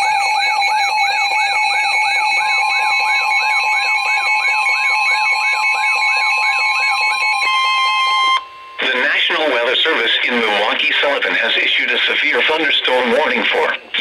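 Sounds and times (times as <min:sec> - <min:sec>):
warbling siren tone: 0:00.0 - 0:08.8
steady electronic tone: 0:05.1 - 0:10.0.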